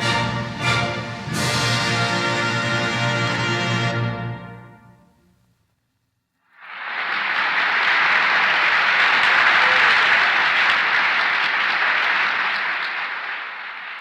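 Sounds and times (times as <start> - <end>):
audience applauding: 6.5 - 14.0.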